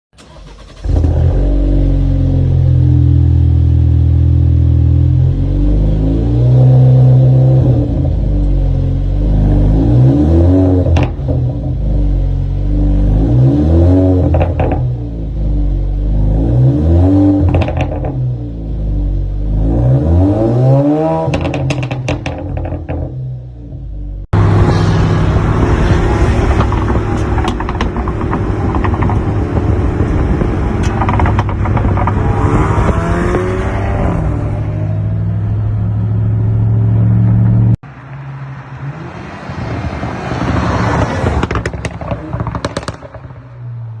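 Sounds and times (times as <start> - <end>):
car engine revving: 0.2 - 43.5
exhaust pops and crackles: 10.8 - 11.7, 14.2 - 15.0, 17.4 - 18.2, 21.2 - 23.2, 26.3 - 33.6, 40.9 - 43.4.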